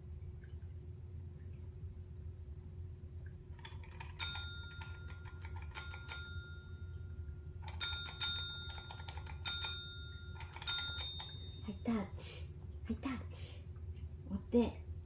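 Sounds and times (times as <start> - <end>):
desk service bell ringing: 3.9 - 12.0.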